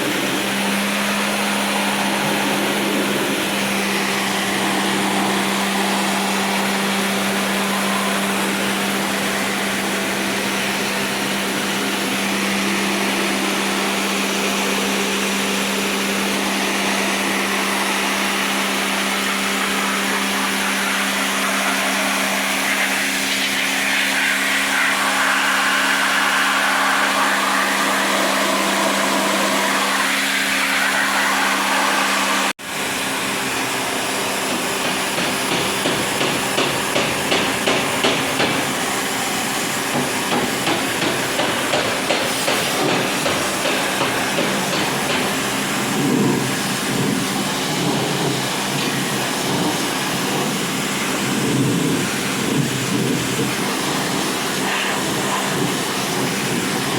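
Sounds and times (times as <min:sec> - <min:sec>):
small electric motor running: 0:00.0 - 0:32.5.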